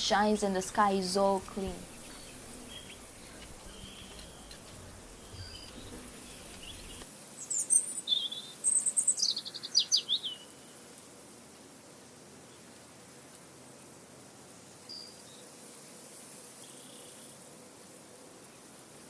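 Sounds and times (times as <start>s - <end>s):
songbird chirping: 0.0s - 10.6s
faint outdoor ambience: 0.0s - 19.0s.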